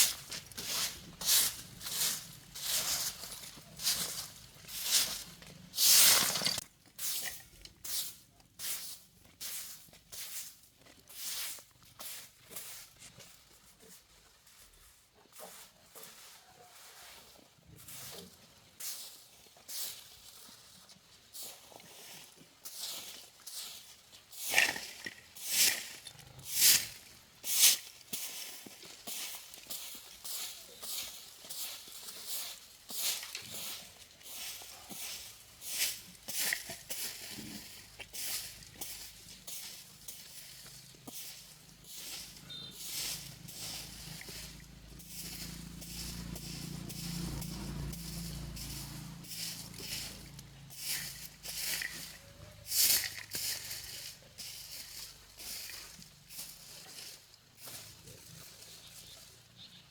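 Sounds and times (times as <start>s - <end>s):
short scraping strokes: 41.1s - 55.7s.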